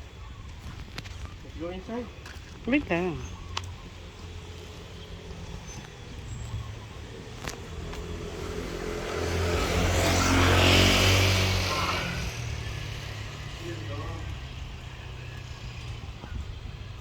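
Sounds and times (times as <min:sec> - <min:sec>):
vehicle driving past: 0:04.1 - 0:16.2.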